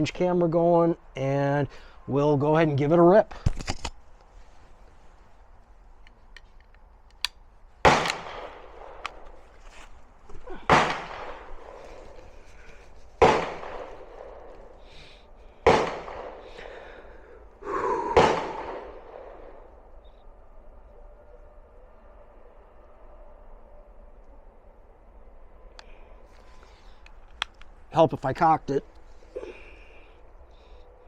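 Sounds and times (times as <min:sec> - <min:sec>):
gunshots with echo: 0:07.8 - 0:09.1, 0:10.6 - 0:11.8, 0:13.2 - 0:14.5, 0:15.6 - 0:16.6, 0:18.1 - 0:19.7.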